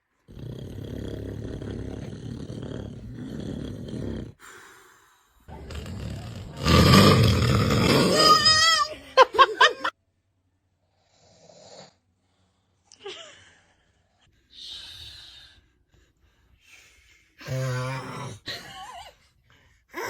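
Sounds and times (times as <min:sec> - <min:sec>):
baby crying: 0:07.9 - 0:09.0.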